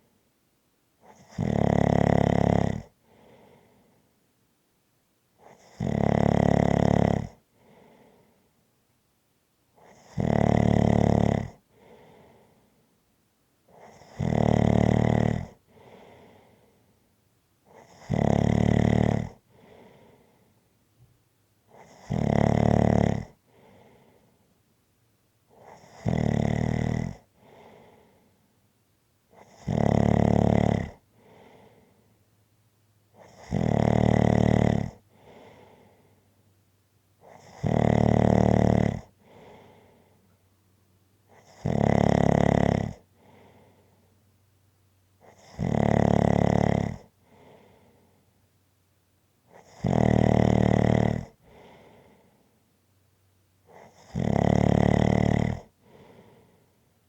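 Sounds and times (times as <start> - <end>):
loud snoring: 1.0 - 3.2, 5.4 - 7.4, 9.8 - 12.1, 13.7 - 16.4, 17.7 - 20.0, 21.7 - 24.1, 25.5 - 28.1, 29.3 - 31.8, 33.2 - 36.1, 37.2 - 39.9, 41.3 - 43.8, 45.2 - 47.8, 49.5 - 52.2, 53.7 - 56.4
soft breathing: 2.9 - 4.3, 7.4 - 8.7, 11.6 - 13.1, 15.6 - 17.9, 19.3 - 21.1, 23.3 - 24.6, 27.2 - 28.6, 31.0 - 32.4, 35.0 - 36.6, 39.0 - 40.6, 43.0 - 44.4, 47.0 - 48.5, 51.3 - 52.8, 55.6 - 57.0.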